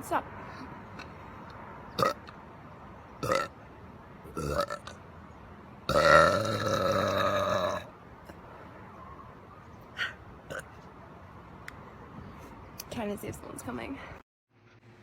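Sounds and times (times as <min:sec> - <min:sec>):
woman burping: 0:05.9 - 0:07.8.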